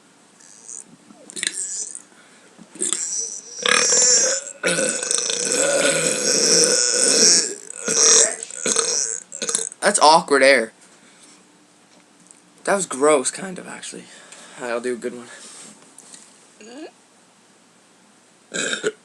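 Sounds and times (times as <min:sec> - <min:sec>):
man burping loudly: 0:00.4 - 0:02.1, 0:02.8 - 0:09.8, 0:18.5 - 0:19.0.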